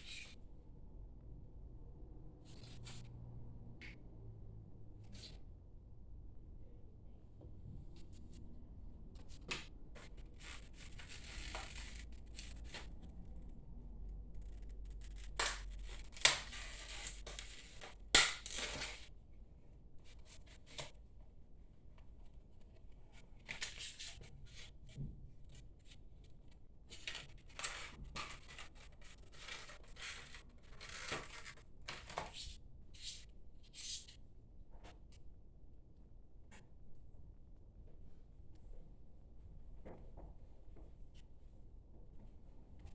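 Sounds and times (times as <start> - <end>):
packaging rustling and tearing: 27.1 - 32.2.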